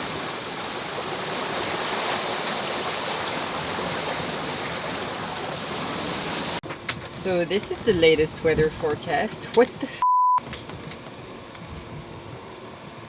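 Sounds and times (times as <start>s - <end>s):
water rushing around a yacht: 0.0s - 13.0s.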